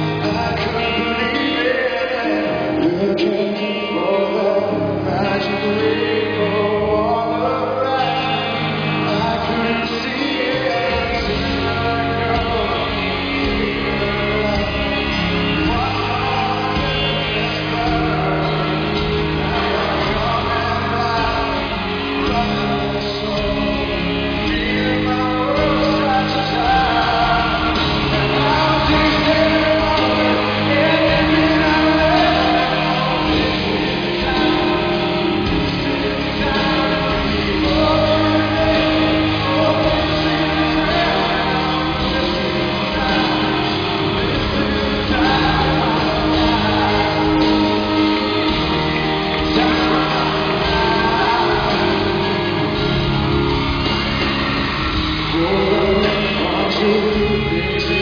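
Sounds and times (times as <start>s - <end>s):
man singing a slow ballad: 0.0s - 53.3s, 55.2s - 58.0s
rock band playing: 0.0s - 58.0s.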